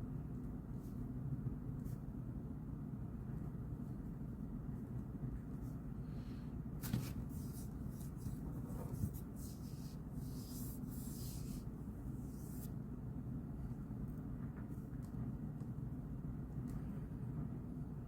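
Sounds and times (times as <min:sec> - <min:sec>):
low steady hum: 0:00.0 - 0:18.0
pen scratching on paper: 0:06.9 - 0:12.7.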